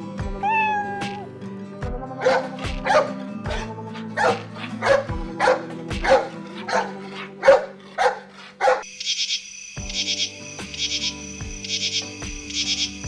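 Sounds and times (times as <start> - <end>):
background music: 0.0 - 8.8, 9.8 - 13.0
dog barking: 4.2 - 8.9.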